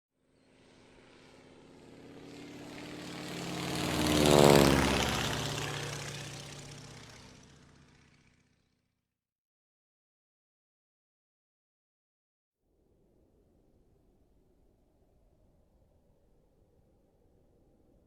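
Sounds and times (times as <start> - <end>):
car driving past: 0.5 - 8.4.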